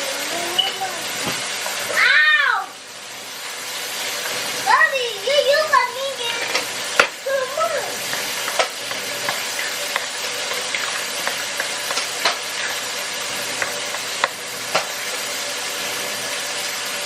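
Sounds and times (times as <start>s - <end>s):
food sizzling in a frying pan: 0.0s - 17.0s
utensil tapping a pan: 6.5s - 7.2s.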